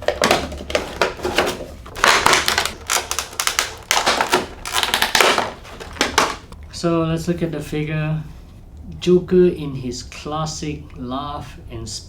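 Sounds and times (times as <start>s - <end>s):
toy packaging clicks and rustles: 0.0s - 6.5s.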